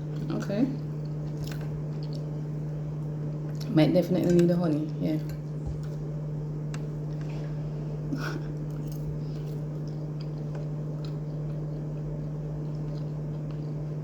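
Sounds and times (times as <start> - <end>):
steady low hum: 0.0 - 14.0
person chewing: 0.8 - 3.7, 5.4 - 7.4, 8.2 - 14.0.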